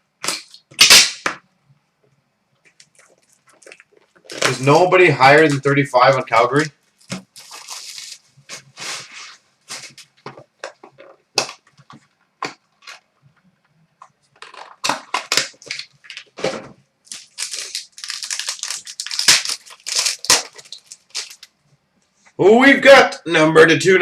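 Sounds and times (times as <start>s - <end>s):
packaging crinkling and tearing: 2.7s - 9.1s, 14.4s - 16.4s, 17.1s - 21.6s.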